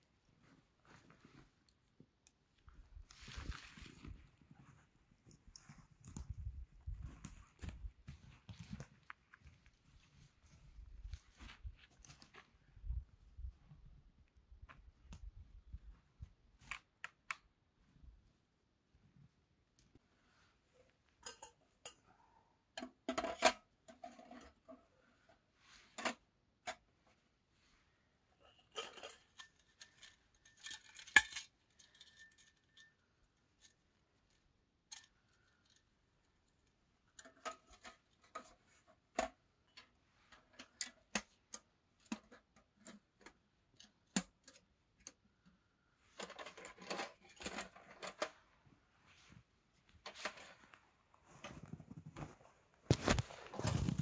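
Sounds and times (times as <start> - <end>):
rustling: 0.2 - 12.8, 46.0 - 54.0
small metal items clinking: 28.6 - 33.7.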